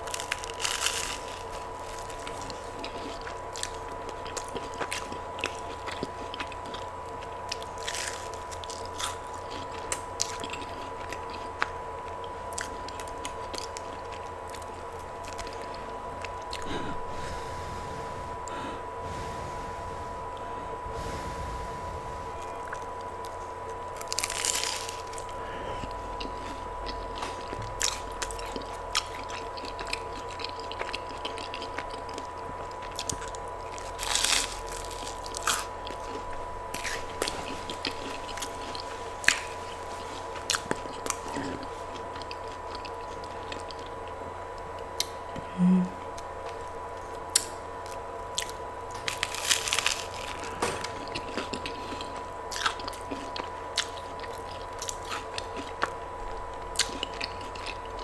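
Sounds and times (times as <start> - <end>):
person chewing food: 0.0 - 45.5, 46.1 - 58.0.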